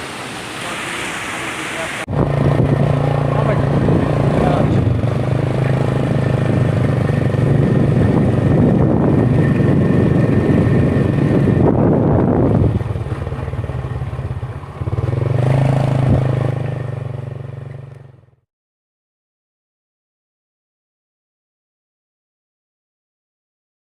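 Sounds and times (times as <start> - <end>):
motorcycle engine running: 2.1 - 18.4.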